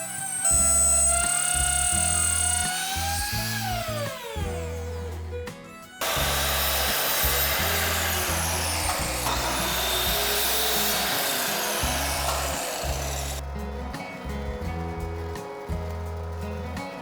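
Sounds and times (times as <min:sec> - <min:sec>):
electric power tool grinding wood: 0:00.0 - 0:05.3, 0:06.0 - 0:17.0.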